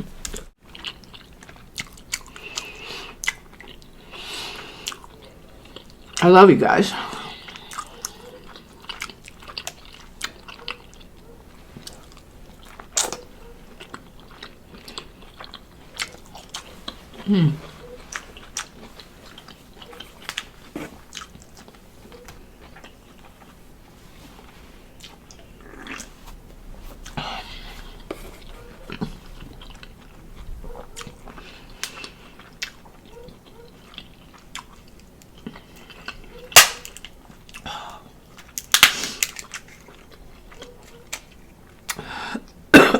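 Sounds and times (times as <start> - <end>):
chewing and biting food: 0.0 - 6.3, 6.9 - 42.7
sharp crack: 36.5 - 37.2, 38.6 - 39.7.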